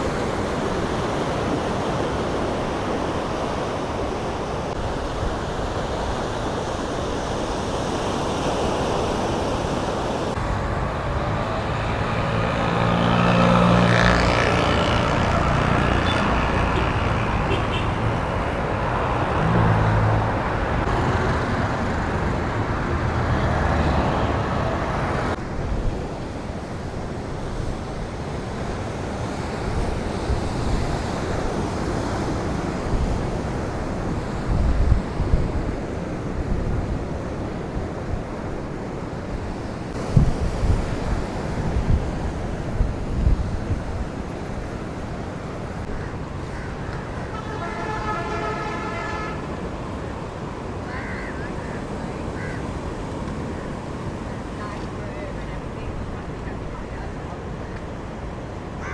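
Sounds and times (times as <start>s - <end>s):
traffic passing: 0.0s - 58.9s
vehicle horn: 14.4s - 18.2s, 47.3s - 49.7s.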